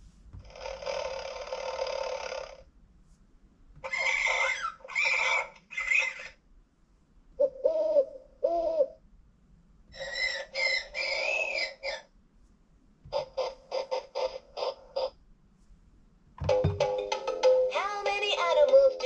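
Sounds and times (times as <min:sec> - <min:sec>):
bird calls: 0:03.8 - 0:06.4, 0:09.9 - 0:12.1
hooting calls: 0:03.8 - 0:06.4, 0:09.9 - 0:12.1.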